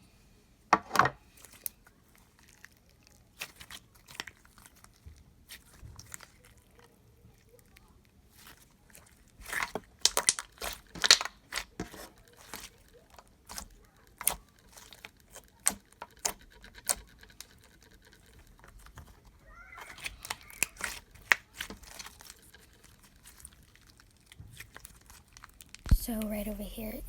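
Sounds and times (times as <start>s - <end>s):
slime squishing with wet clicks: 1.2s - 26.4s.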